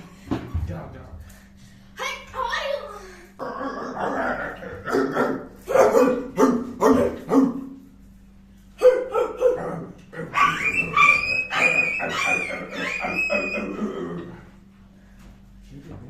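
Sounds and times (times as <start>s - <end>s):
dog barking: 4.0s - 7.8s, 8.8s - 13.7s
high whistling tones: 10.5s - 13.8s.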